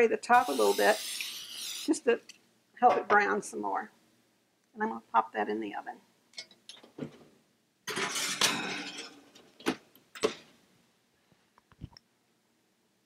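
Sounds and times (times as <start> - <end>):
metal and glass clatter: 7.9 - 9.4.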